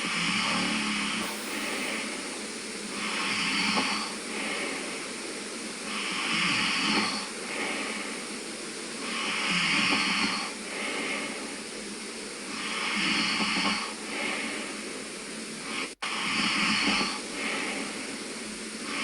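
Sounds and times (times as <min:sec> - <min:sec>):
man snoring: 0:01.2 - 0:08.3.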